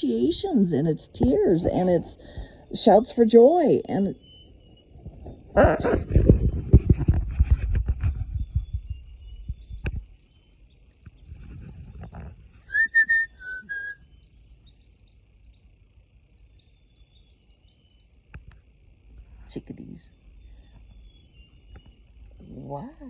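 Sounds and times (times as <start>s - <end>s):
chickadee whistled phrase: 12.7s - 14.0s.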